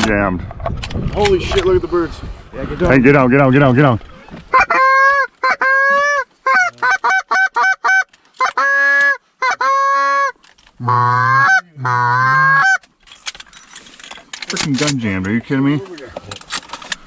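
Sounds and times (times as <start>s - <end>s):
goose call clucks and honks: 4.2s - 12.9s.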